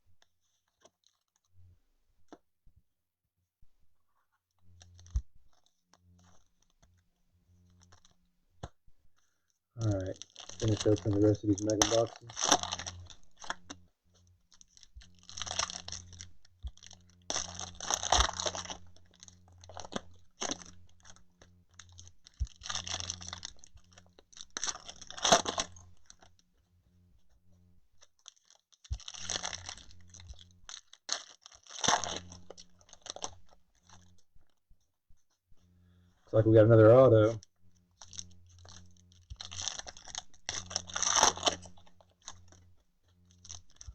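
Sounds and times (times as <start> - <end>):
pack wrappers torn and crinkled: 9.8 - 13.8, 14.5 - 26.4, 28.1 - 34.2, 38.0 - 43.9.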